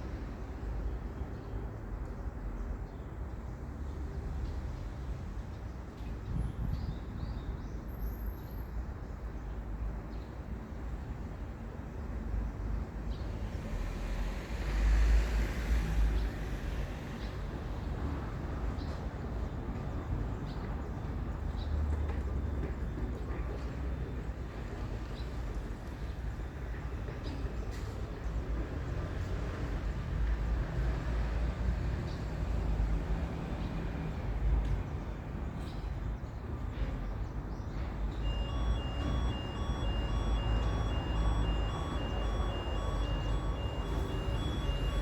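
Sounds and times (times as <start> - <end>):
low outdoor rumble: 38.4 - 45.0.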